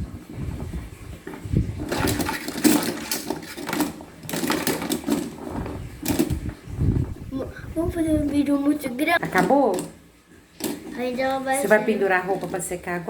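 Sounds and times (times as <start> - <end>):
washing machine spinning: 0.0 - 13.0
rattling and knocking: 1.8 - 7.2.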